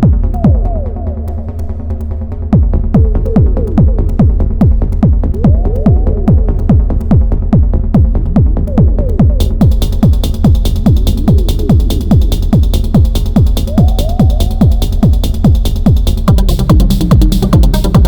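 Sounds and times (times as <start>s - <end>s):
steady synth bass: 0.0s - 18.0s
hi-hats: 9.4s - 18.0s.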